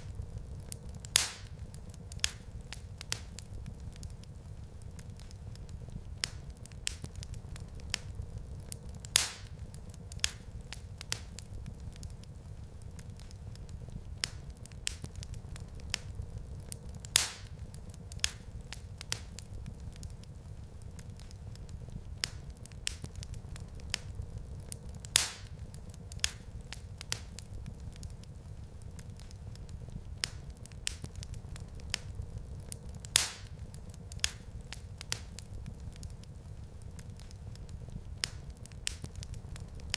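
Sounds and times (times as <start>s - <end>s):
log fire crackling: 0.0s - 39.9s
low fire rumble: 0.0s - 39.9s
loud fire pop: 1.1s - 1.6s, 9.2s - 9.5s, 33.1s - 33.5s.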